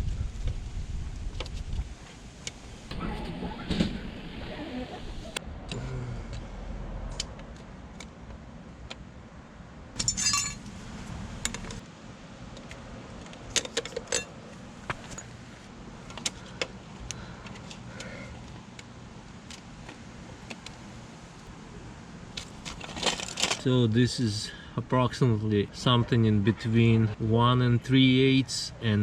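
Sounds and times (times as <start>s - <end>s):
jangling rattle: 10.0s - 10.7s
metal tools clinking: 10.0s - 10.7s, 13.5s - 14.4s, 22.6s - 23.7s.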